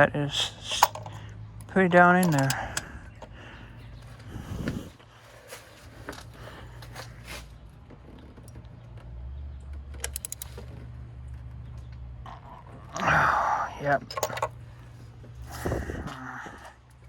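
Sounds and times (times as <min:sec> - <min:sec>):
low steady hum: 0:00.0 - 0:17.0
ratchet and socket clicking: 0:00.7 - 0:02.9, 0:09.7 - 0:10.8.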